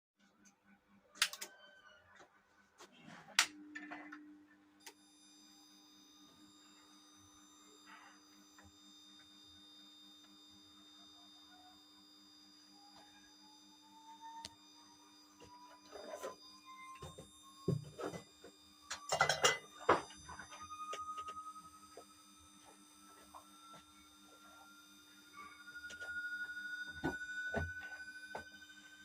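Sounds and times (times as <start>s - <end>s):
thin high-pitched whine: 3.0s - 29.0s
steady electronic tone: 3.5s - 29.0s.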